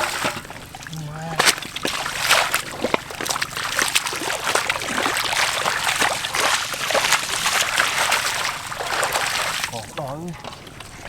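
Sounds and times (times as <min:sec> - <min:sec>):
shallow water splashing: 0:00.0 - 0:11.0.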